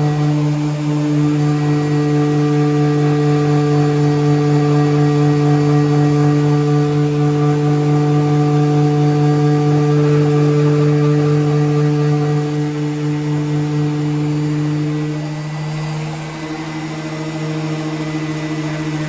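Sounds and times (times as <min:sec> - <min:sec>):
electric power sander whirring: 0:00.0 - 0:19.0.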